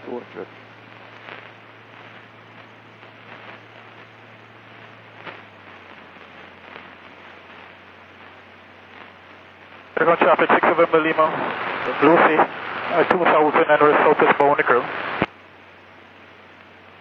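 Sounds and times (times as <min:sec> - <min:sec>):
airflow hiss: 0:04.9 - 0:15.3.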